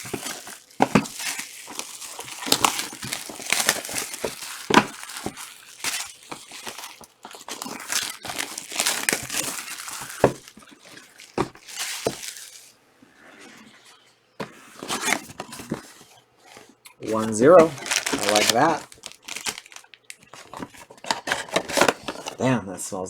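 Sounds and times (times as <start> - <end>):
plastic wrapping crinkling and tearing: 0.0 - 12.8, 14.8 - 22.4.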